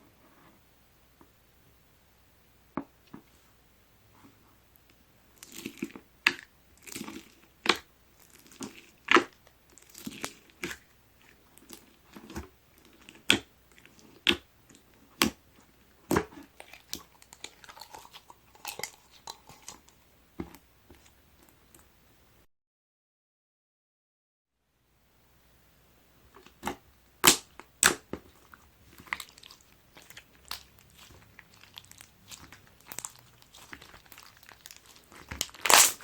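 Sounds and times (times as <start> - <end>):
slime with foam beads crackling: 5.3 - 14.4, 15.0 - 19.9, 26.5 - 36.0
sharp pops: 26.6 - 28.1.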